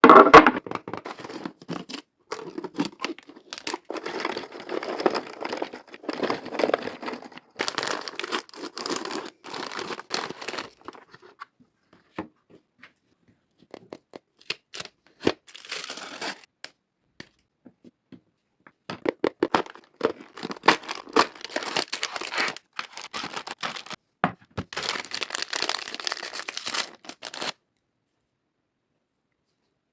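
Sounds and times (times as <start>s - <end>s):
wrappers tearing and crinkling: 1.1s - 11.2s, 14.5s - 16.5s, 19.5s - 24.0s, 24.7s - 27.6s.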